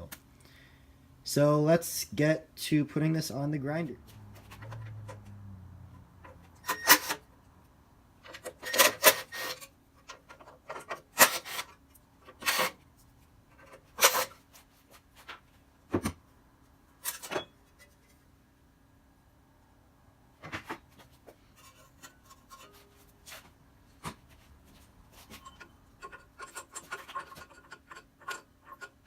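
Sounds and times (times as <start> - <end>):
metal parts scraping and clinking: 8.2 - 12.8, 13.5 - 14.4, 17.0 - 18.0, 21.5 - 23.4, 25.2 - 29.0.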